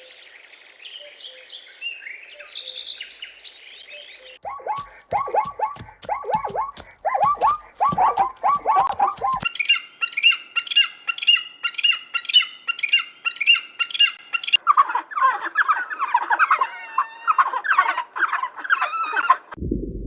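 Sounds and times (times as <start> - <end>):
bird squawks: 4.0 - 19.5
animal calls: 4.0 - 19.6.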